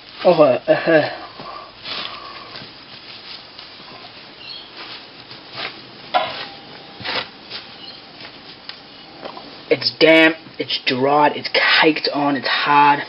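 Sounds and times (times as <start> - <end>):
handling knocks and scrapes: 1.4 - 9.4.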